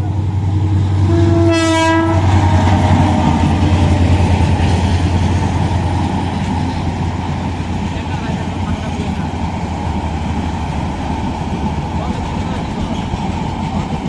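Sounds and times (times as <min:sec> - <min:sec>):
train rumbling past: 0:00.0 - 0:14.0
train horn: 0:01.0 - 0:03.0.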